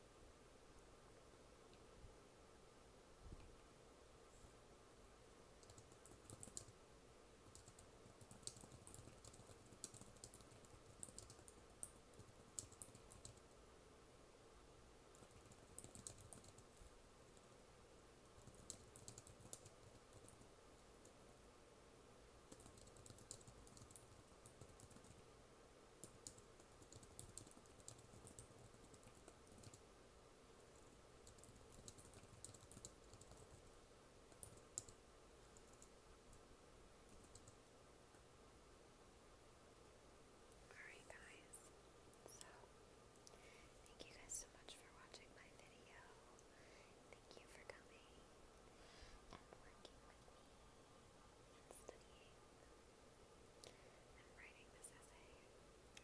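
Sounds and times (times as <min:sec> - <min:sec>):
keyboard typing: 0:05.6 - 0:06.8, 0:07.4 - 0:13.6, 0:15.2 - 0:17.5, 0:18.3 - 0:21.3, 0:22.5 - 0:25.2, 0:26.0 - 0:29.8, 0:30.8 - 0:36.4, 0:37.1 - 0:37.6.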